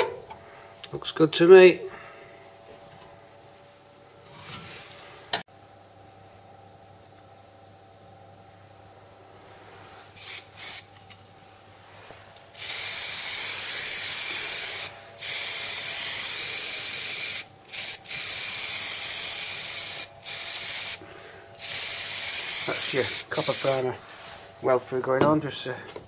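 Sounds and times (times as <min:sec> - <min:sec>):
aerosol can spraying: 0:10.2 - 0:10.9, 0:12.6 - 0:21.0, 0:21.6 - 0:23.8.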